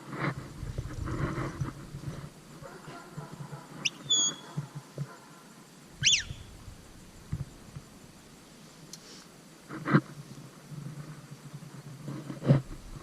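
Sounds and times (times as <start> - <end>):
shepherd's whistle: 3.8 - 4.5, 6.0 - 6.4.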